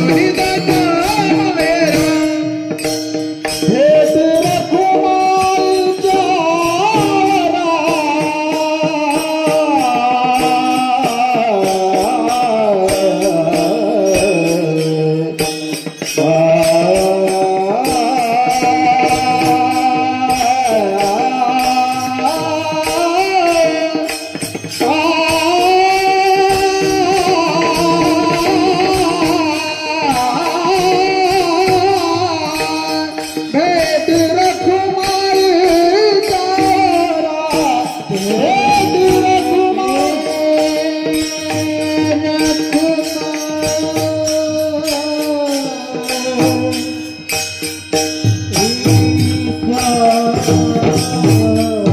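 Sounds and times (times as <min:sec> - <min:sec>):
rhythmic percussion: 0:00.0 - 0:51.9
solo voice singing: 0:16.2 - 0:47.0.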